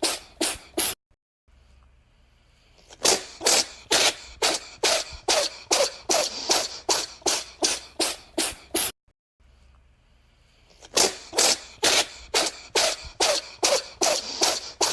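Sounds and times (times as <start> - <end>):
cat sneezing: 0.0 - 1.0, 2.8 - 9.0, 10.7 - 14.9.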